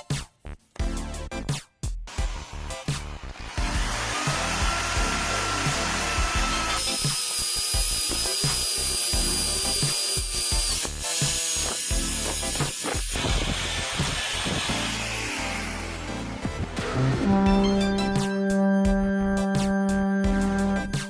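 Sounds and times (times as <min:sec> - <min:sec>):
background music with a beat: 0:00.0 - 0:15.1, 0:15.7 - 0:21.0
power tool whining: 0:02.1 - 0:16.7.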